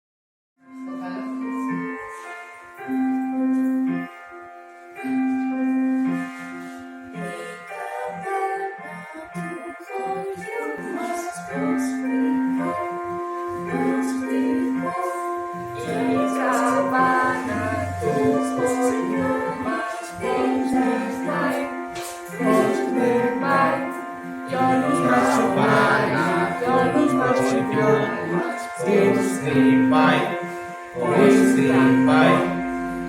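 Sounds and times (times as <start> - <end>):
group of voices singing: 7.2 - 33.0
instrumental accompaniment: 10.9 - 33.0.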